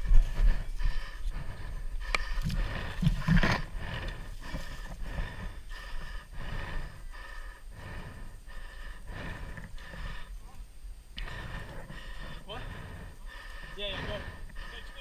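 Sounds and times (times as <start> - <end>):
running footsteps: 0.0 - 7.0
person breathing hard: 0.0 - 15.0.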